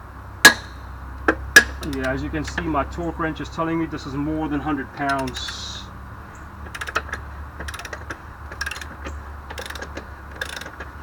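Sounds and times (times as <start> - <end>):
torque wrench ratcheting clicks: 5.0 - 5.6, 6.6 - 11.0.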